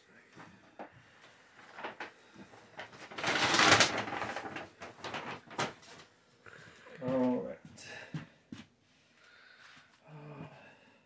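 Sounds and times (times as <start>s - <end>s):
rustling scrape: 1.6s - 6.0s.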